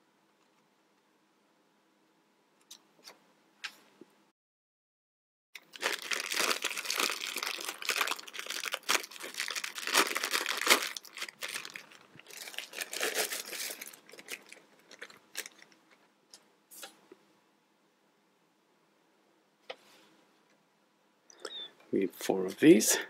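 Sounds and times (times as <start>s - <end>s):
plastic crinkling and rustling: 5.6s - 16.1s.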